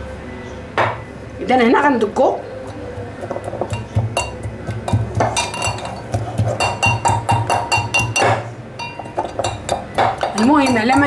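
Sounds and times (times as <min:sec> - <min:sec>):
pestle striking metal mortar: 0:02.7 - 0:11.0.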